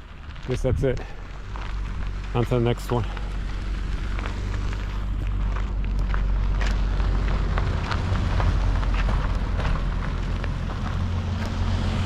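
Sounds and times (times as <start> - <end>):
small clicks and crackles: 0.0 - 11.6
car road and engine rumble: 0.0 - 12.0.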